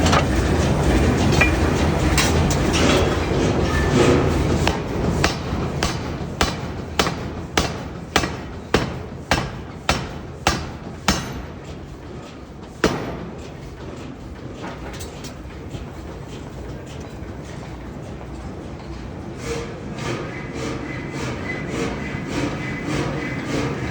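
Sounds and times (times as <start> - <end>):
forging hammer striking metal: 1.4 - 2.4, 4.6 - 11.6.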